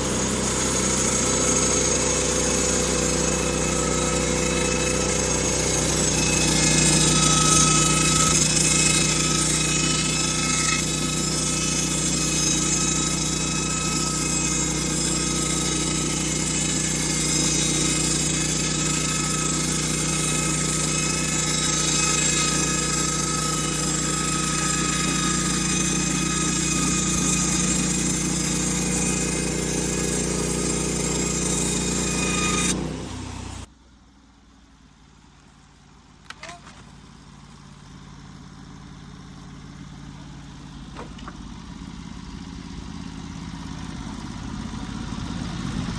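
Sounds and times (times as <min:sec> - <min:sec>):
motor-driven machine whining: 0:00.0 - 0:33.7.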